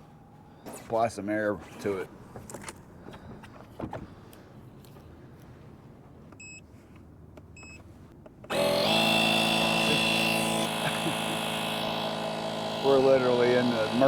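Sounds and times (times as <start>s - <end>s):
tire inflator compressor running: 8.5s - 14.0s.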